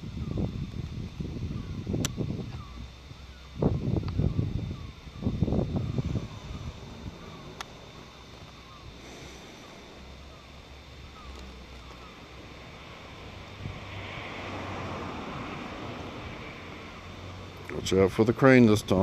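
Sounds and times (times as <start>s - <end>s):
wind blowing across microphone: 0.0s - 8.5s.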